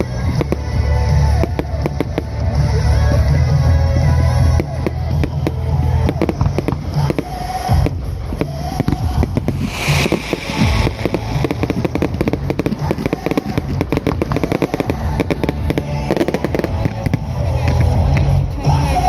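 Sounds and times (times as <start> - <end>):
fireworks popping and crackling: 0.0 - 19.0
firework hissing burst: 5.5 - 17.4.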